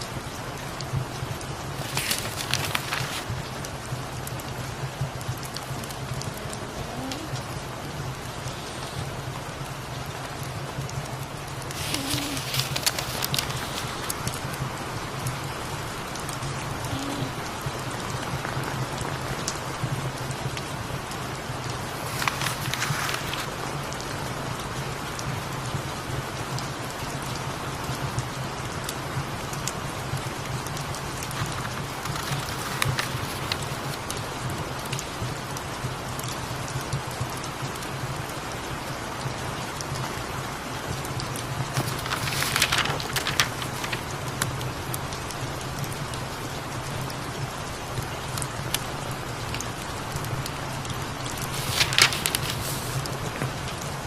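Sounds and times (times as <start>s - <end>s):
steady rain falling: 0.0s - 54.0s
fireplace crackling: 1.6s - 3.5s, 11.4s - 19.8s, 21.6s - 23.6s, 31.0s - 34.2s, 41.7s - 44.1s, 51.3s - 53.4s.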